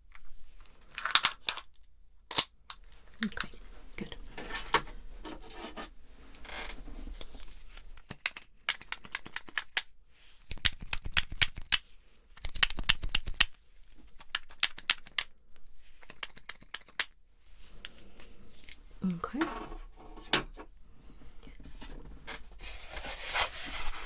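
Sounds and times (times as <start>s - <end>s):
close-miked clicking and crackling: 7.2s - 18.0s.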